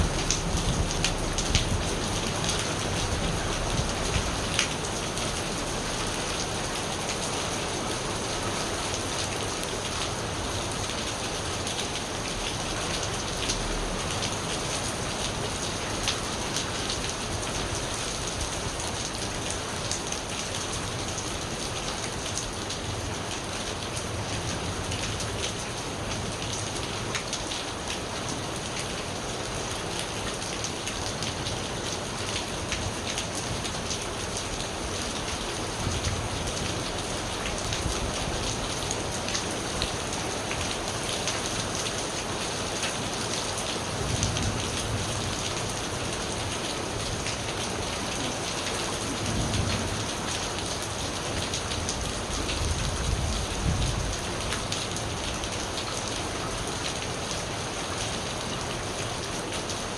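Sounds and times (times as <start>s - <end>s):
distant thunder rumbling: 0.0s - 6.7s
rain pattering: 0.0s - 59.9s.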